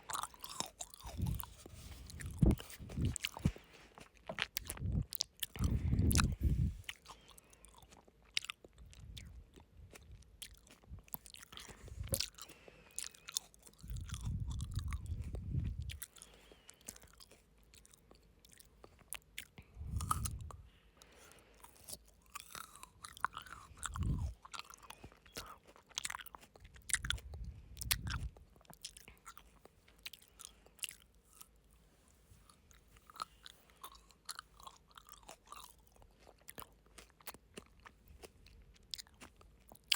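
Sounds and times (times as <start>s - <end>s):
crunchy chewing of frozen grapes: 0.0s - 39.9s
breath puffs on microphone: 5.6s - 6.8s.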